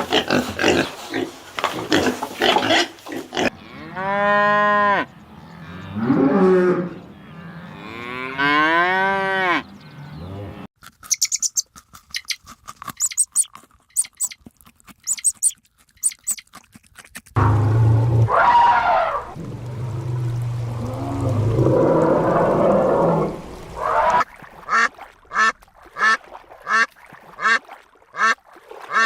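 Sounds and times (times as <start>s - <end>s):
cow mooing: 3.4s - 10.7s.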